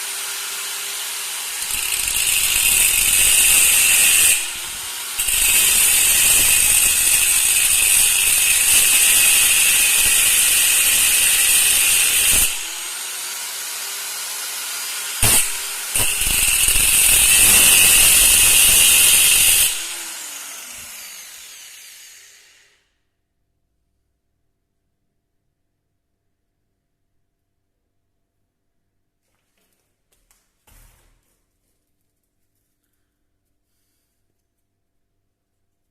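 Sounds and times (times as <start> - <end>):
power tool working metal: 0.0 - 22.8.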